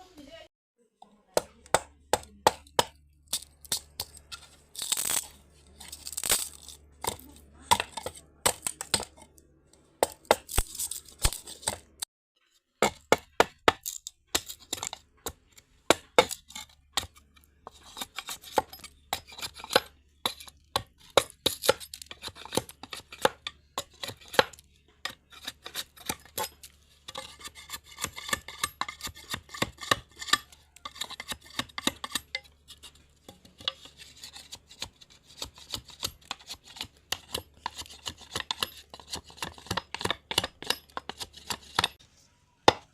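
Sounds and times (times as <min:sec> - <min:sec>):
blade chopping bamboo: 0:01.3 - 0:09.3, 0:10.0 - 0:12.1, 0:12.8 - 0:42.0.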